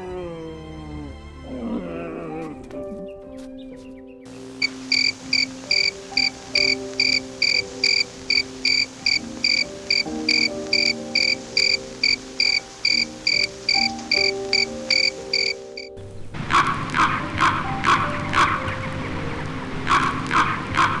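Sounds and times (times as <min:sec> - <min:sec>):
soft background music: 0:00.0 - 0:21.0
regular insect-like chirps: 0:04.6 - 0:15.9.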